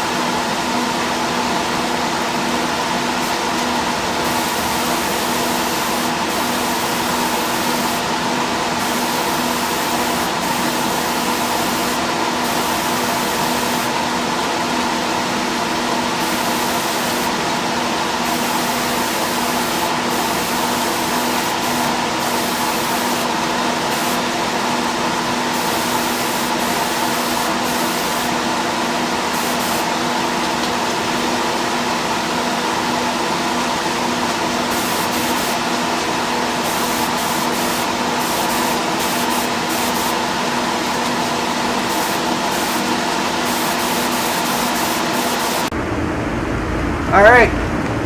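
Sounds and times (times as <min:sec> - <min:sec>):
spray booth air hum: 0:02.2 - 0:48.0
paint spray gun hissing: 0:03.2 - 0:14.0, 0:16.0 - 0:17.5, 0:18.2 - 0:24.6, 0:25.4 - 0:30.0, 0:34.6 - 0:35.8, 0:36.5 - 0:45.7.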